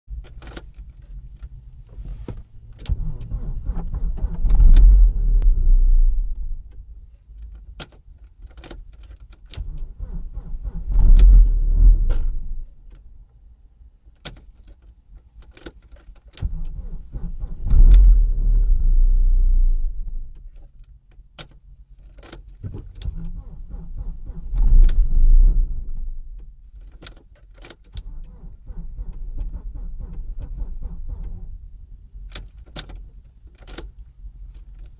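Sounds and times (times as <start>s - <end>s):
engine cranking on starter: 2.8s - 5.6s, 9.6s - 12.5s, 16.4s - 20.0s, 23.0s - 26.1s, 27.9s - 31.6s.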